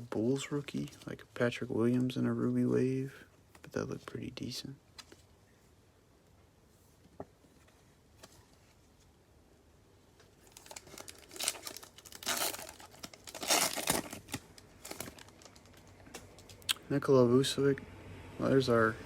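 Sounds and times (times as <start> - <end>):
plastic wrapper tearing and crinkling: 10.4 - 16.7.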